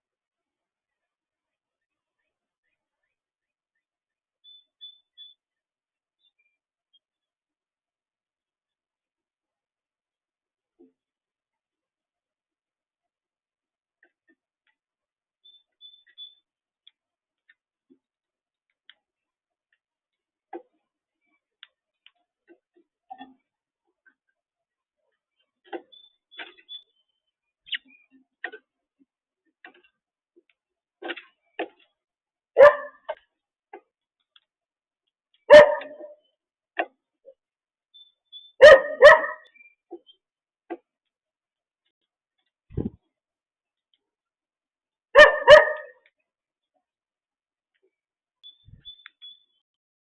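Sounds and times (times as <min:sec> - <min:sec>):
faint clicks and taps: 0:15.6 - 0:24.4
dog barking: 0:32.6 - 0:33.2, 0:35.5 - 0:36.2, 0:38.6 - 0:39.5, 0:45.2 - 0:46.0
high-pitched chirps: 0:48.4 - 0:49.6.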